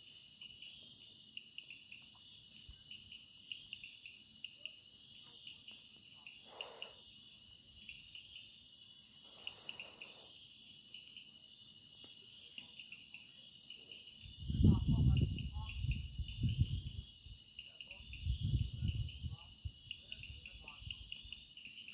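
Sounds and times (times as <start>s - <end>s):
crickets chirping: 0.0s - 21.9s.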